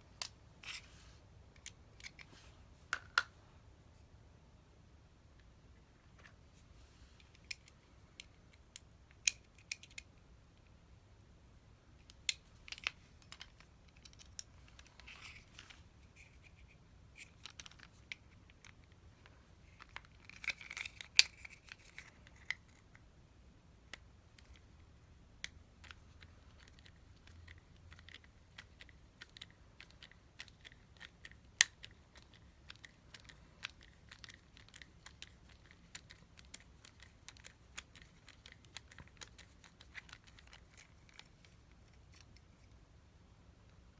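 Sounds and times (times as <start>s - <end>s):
light clicks of small parts: 1.5s - 3.3s, 7.1s - 11.3s, 12.0s - 23.1s, 25.4s - 42.9s.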